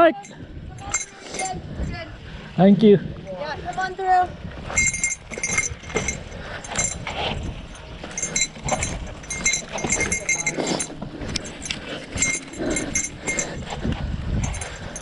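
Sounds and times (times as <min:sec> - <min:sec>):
wind on microphone: 0:00.0 - 0:15.0
bicycle tyres rumbling on rocks: 0:03.4 - 0:15.0.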